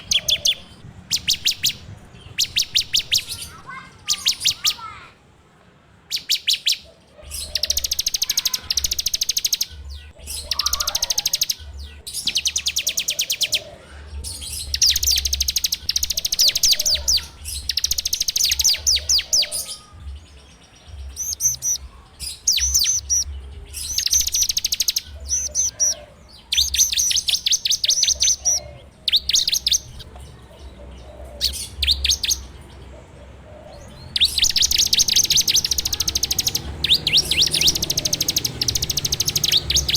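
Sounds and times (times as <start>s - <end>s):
bird singing buzzing trills: 21.0s - 30.1s, 34.0s - 39.9s.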